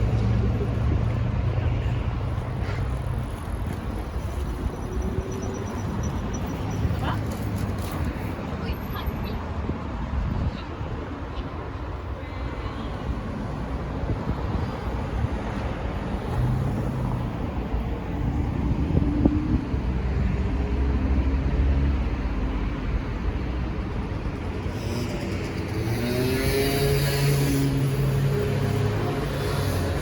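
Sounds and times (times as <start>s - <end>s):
cars passing: 0.0s - 30.0s
tyre and street noise: 0.0s - 30.0s.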